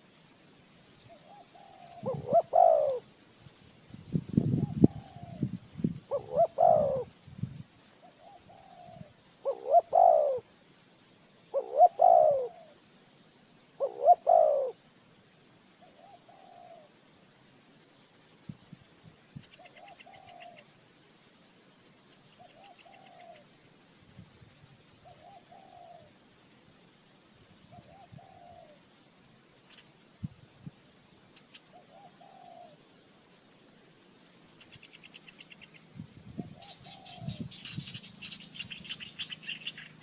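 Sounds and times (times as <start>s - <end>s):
dove cooing: 1.1s - 3.1s, 4.4s - 7.2s, 8.0s - 10.5s, 11.5s - 12.8s, 13.8s - 14.8s, 15.8s - 17.0s, 19.6s - 20.7s, 22.4s - 23.5s, 25.0s - 26.2s, 27.7s - 28.8s, 31.7s - 32.9s, 34.7s - 40.0s.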